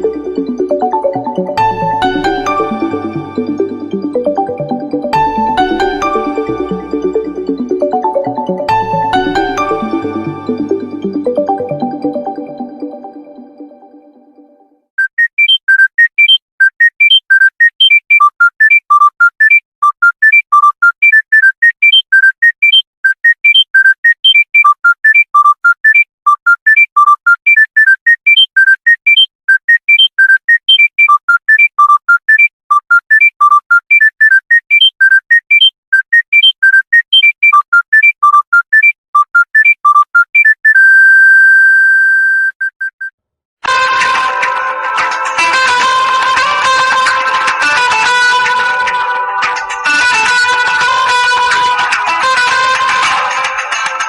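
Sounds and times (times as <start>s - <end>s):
phone ringtone beeps: 0.0s - 13.6s, 15.0s - 43.1s.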